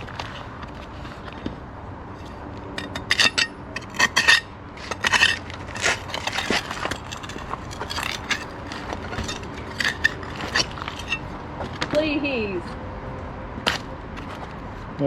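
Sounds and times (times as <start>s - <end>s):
scraping of pavers: 0.0s - 12.1s, 13.6s - 14.9s
clinks of brick on brick: 2.2s - 11.9s.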